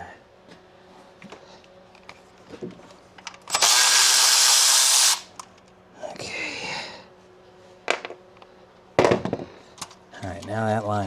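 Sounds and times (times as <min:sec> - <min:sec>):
cordless power tool running: 0:03.5 - 0:05.3.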